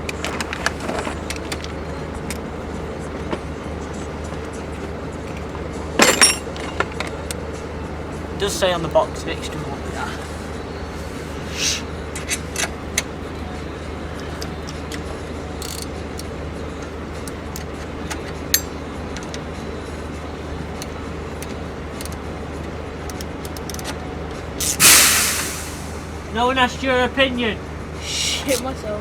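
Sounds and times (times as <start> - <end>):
metallic clicks of spanners: 15.6 - 16.3, 23.1 - 24.0, 24.6 - 25.3
sudden loud blast of noise: 24.8 - 26.2.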